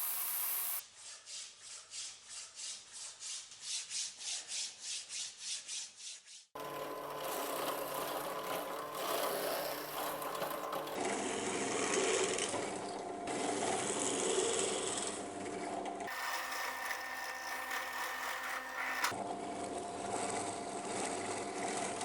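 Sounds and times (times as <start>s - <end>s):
power tool grinding wood: 6.6s - 12.7s, 16.1s - 19.2s.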